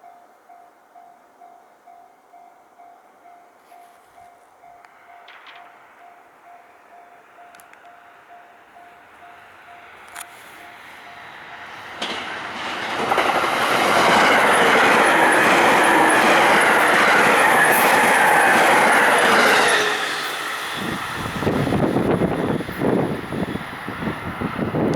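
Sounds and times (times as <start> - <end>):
train passing with loud roar: 0.0 - 24.9
wind buffeting microphone: 11.3 - 24.9.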